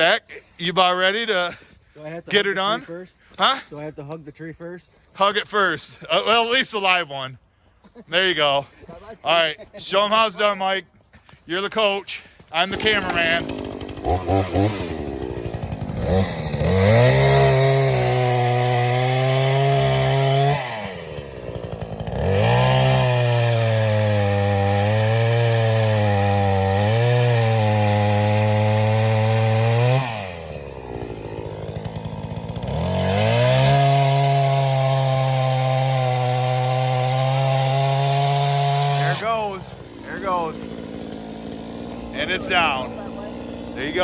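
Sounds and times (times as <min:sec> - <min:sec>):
chainsaw cutting into trunk: 0:11.2 - 0:44.0.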